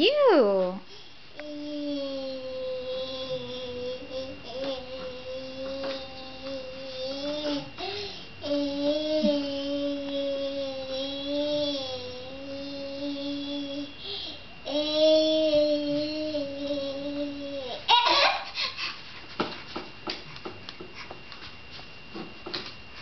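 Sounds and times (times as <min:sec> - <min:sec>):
toddler sing-song vocalizing: 0:01.4 - 0:07.8, 0:08.4 - 0:14.0, 0:14.6 - 0:18.1
toddler crying: 0:14.7 - 0:18.8.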